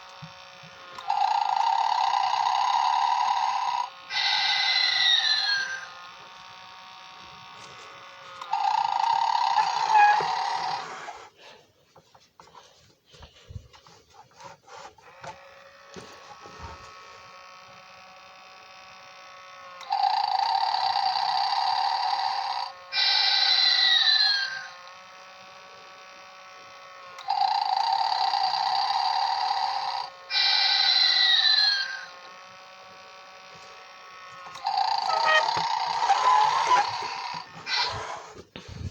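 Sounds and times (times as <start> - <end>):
toy snoring sound: 0.6 - 11.4, 19.8 - 26.2, 27.2 - 32.4, 33.3 - 38.9.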